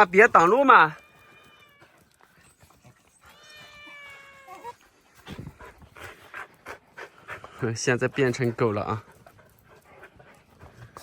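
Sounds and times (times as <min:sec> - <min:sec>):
puppy whining: 0:00.0 - 0:05.7.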